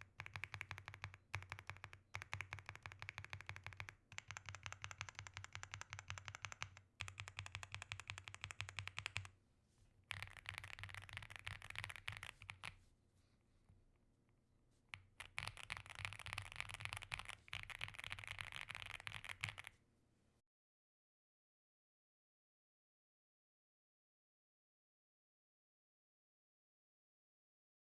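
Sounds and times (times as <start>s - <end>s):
fast typing on keyboard: 0.0s - 9.3s, 10.1s - 12.8s, 15.0s - 19.7s.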